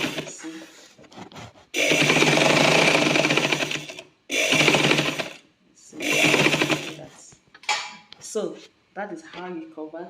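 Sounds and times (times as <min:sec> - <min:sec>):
sewing machine motor hum: 0:00.0 - 0:00.4, 0:01.7 - 0:05.4, 0:06.0 - 0:07.0.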